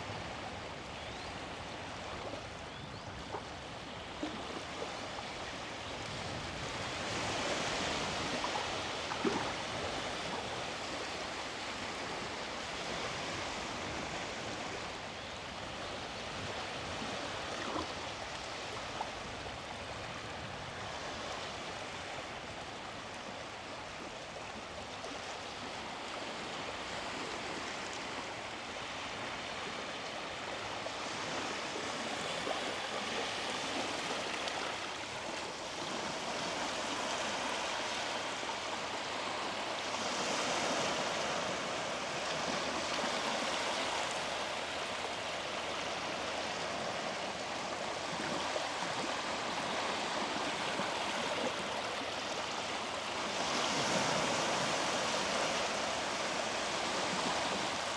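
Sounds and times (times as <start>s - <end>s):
sea waves breaking on beach: 4.2s - 15.0s, 25.6s - 57.9s.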